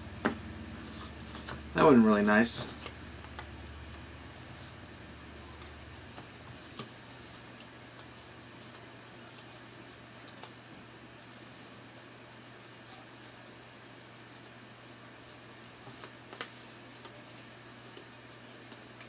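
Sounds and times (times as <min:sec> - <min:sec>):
cardboard pieces handled: 0:00.7 - 0:01.7.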